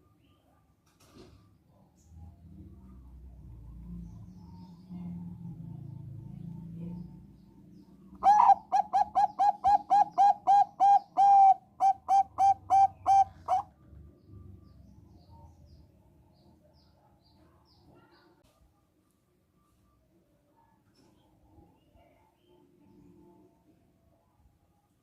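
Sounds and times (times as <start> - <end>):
dove cooing: 8.2 - 13.7.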